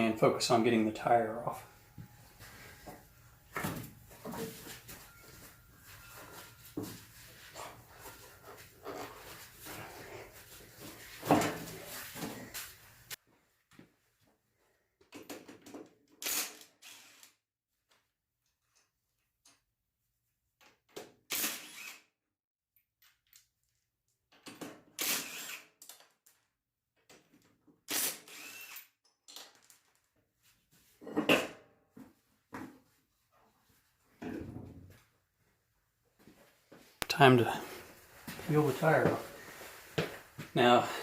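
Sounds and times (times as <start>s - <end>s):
impact wrench bursts: 25.0s - 25.7s, 27.9s - 28.8s.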